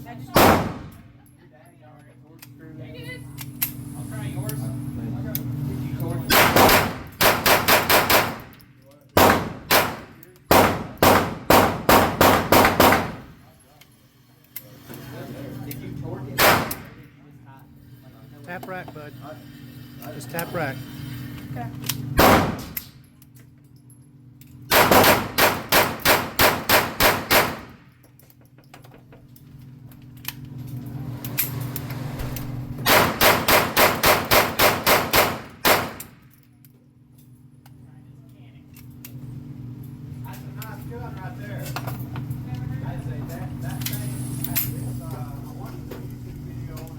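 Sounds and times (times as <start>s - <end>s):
gunshots: 0.4s - 1.0s, 6.3s - 8.5s, 9.2s - 13.4s, 16.4s - 17.0s, 22.2s - 22.8s, 24.7s - 27.8s, 32.8s - 36.2s.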